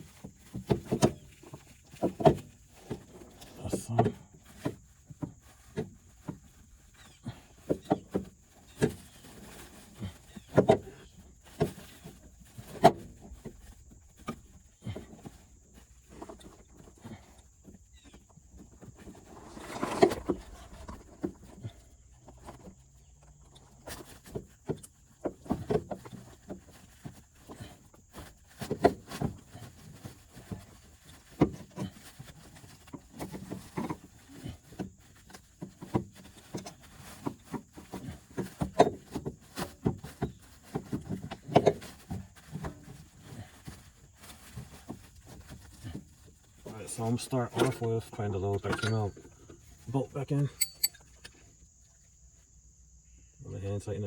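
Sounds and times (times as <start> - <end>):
metal parts and tools knocking: 50.6 - 51.0
metal clatter: 50.6 - 51.1.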